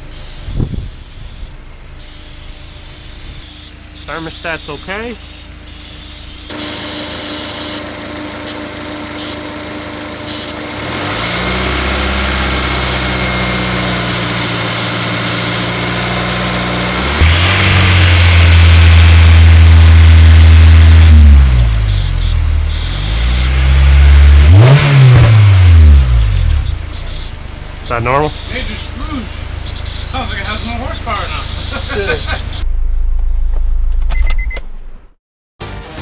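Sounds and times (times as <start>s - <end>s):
car engine revving: 6.5s - 32.6s.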